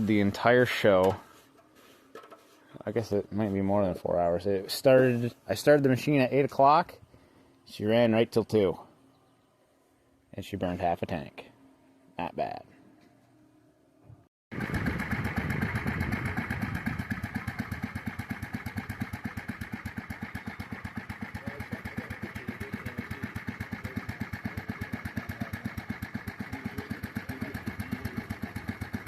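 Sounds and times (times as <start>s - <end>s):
snowmobile engine idling: 14.5s - 29.0s.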